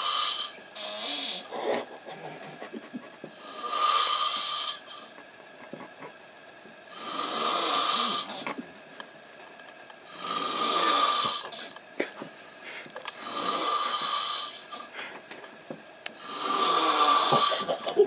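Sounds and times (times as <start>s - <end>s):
person snoring: 0.0s - 1.9s, 3.3s - 5.1s, 6.9s - 8.4s, 10.0s - 11.7s, 13.1s - 14.9s, 16.2s - 17.8s.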